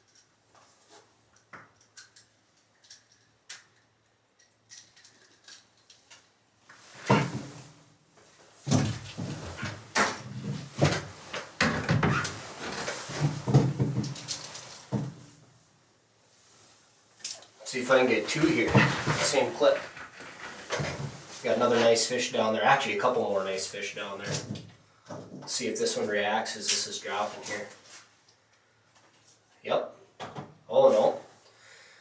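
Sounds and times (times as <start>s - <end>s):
fishing gear clunking and rustling: 6.8s - 15.6s, 17.8s - 22.0s.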